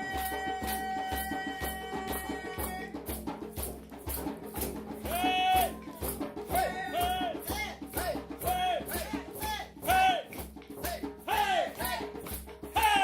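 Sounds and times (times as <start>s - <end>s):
shaker beat: 0.0s - 13.0s.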